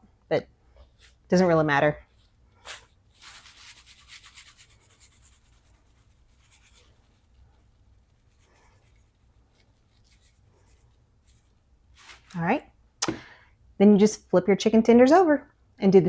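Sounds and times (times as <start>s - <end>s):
salt shaker rattling: 2.6s - 7.4s.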